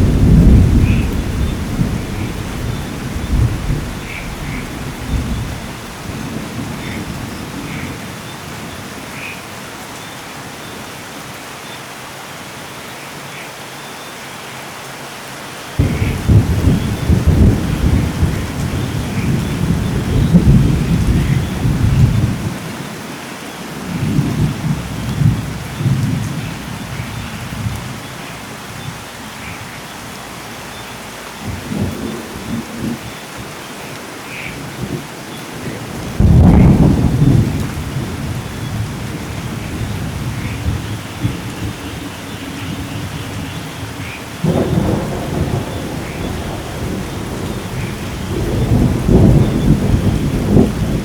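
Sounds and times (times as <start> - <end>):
thunderclap: 0.0 - 7.9, 15.8 - 22.6, 35.6 - 42.1, 42.8 - 51.0
rolling thunder: 0.0 - 8.8, 15.8 - 22.6, 23.8 - 29.3, 34.6 - 51.0
steady rain: 0.0 - 51.0.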